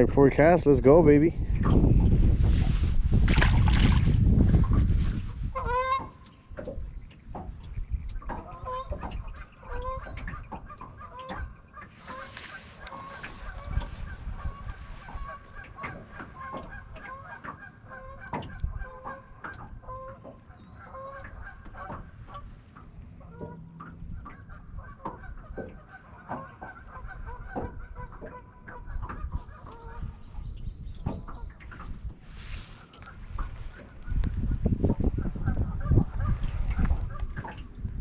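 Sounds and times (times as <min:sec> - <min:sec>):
geese honking: 0:05.5 - 0:06.4, 0:08.2 - 0:30.2.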